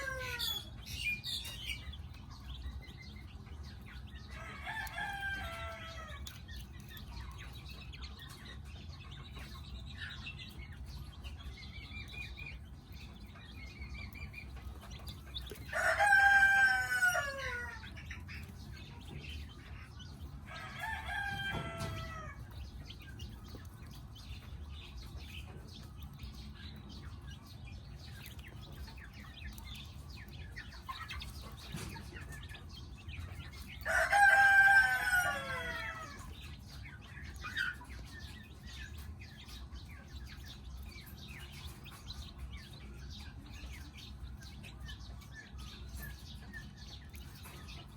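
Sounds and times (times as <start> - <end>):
rooster crowing: 0.0 - 0.6, 15.7 - 17.8, 20.5 - 22.4, 33.8 - 36.2
chicks peeping: 0.0 - 47.9.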